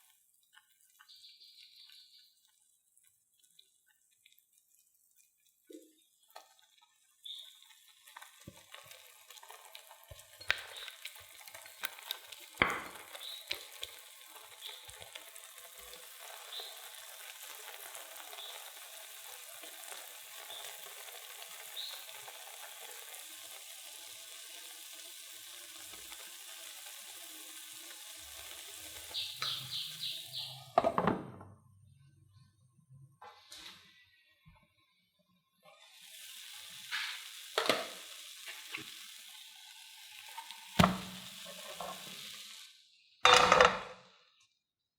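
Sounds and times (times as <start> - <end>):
food sizzling in a frying pan: 0.0 - 30.8, 35.8 - 43.3
utensil knocking on a pan: 12.6 - 13.0.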